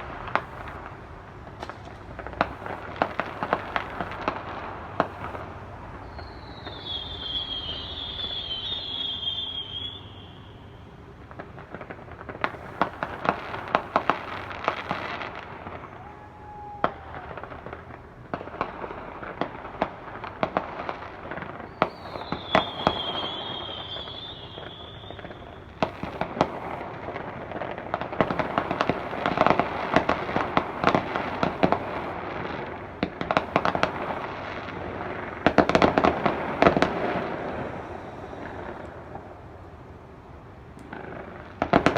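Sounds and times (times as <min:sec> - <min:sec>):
fireworks banging and crackling: 0:00.0 - 0:41.9
high wavering firework whistle: 0:05.0 - 0:11.1, 0:12.4 - 0:17.9, 0:21.3 - 0:26.9, 0:28.2 - 0:34.8.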